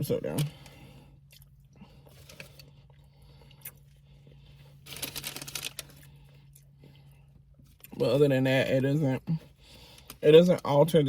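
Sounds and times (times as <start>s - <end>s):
paper wrap crackling and crinkling: 4.9s - 6.0s.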